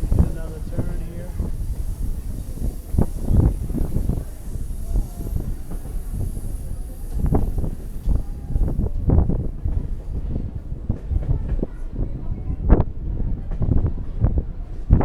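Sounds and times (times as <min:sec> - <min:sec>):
train wheels clunking: 0:00.0 - 0:11.9
train cars rumbling on track: 0:00.0 - 0:15.0.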